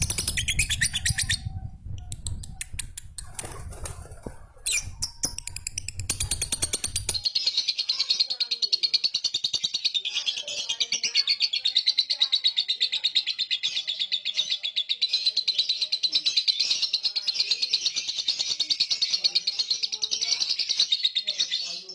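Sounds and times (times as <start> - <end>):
lovebird chattering trill: 0.0 - 3.3, 4.7 - 21.9.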